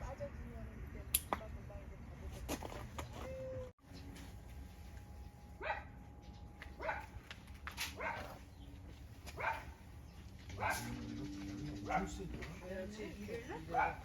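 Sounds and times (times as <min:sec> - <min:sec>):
dog barking: 0:05.6 - 0:06.0, 0:06.8 - 0:07.2, 0:07.9 - 0:08.4, 0:09.4 - 0:09.8, 0:10.6 - 0:11.0, 0:11.8 - 0:12.3, 0:13.7 - 0:14.0.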